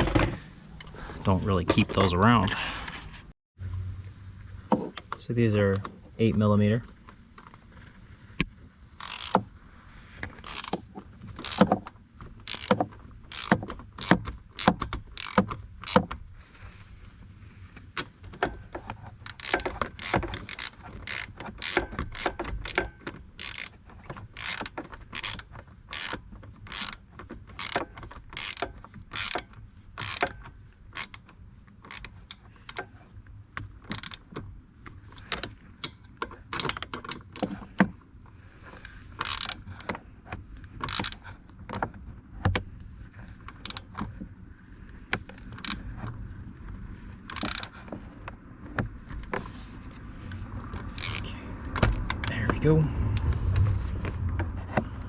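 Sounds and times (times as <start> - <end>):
ratchet wrench clicking: 9.0 - 9.4, 10.4 - 10.8, 11.4 - 11.8, 12.4 - 16.1, 19.2 - 23.8, 24.4 - 30.4, 31.0 - 31.3, 31.9 - 32.8, 33.9 - 34.2, 39.2 - 39.6, 40.9 - 41.3, 45.6 - 45.8, 47.3 - 47.7, 50.9 - 52.3.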